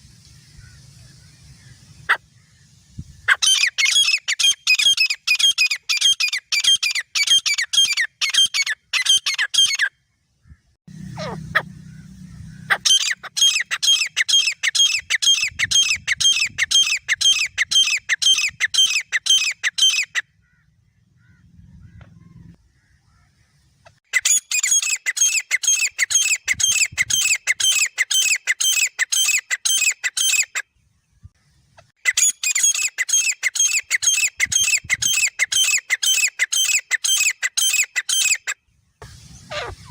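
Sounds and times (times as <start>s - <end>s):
francolins calling: 0.0s - 23.8s, 32.5s - 39.9s.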